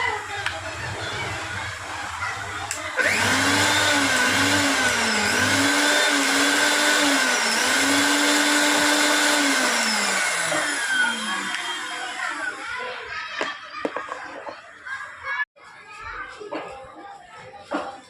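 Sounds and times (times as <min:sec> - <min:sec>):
mixer grinder motor whining: 0:00.0 - 0:12.8.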